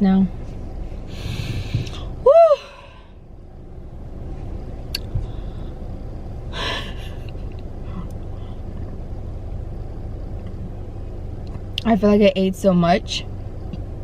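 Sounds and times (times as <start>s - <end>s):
low traffic rumble: 0.0s - 14.0s
woman breathing out heavily: 1.1s - 3.2s, 6.5s - 7.2s.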